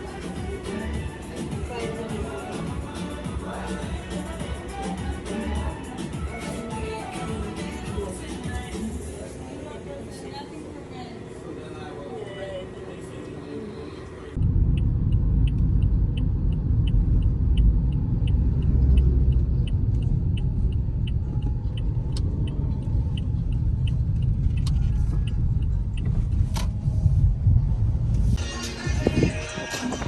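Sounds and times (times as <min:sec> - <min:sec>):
car road and engine rumble: 0:14.3 - 0:30.0
faint steady ticking: 0:14.4 - 0:26.1.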